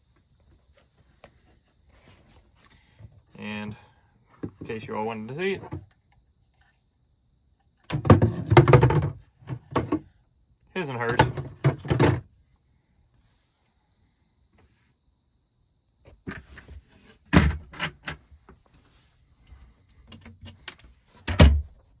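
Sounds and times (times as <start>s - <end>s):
knocks and clicks of handling: 7.9s - 10.0s, 11.1s - 12.2s.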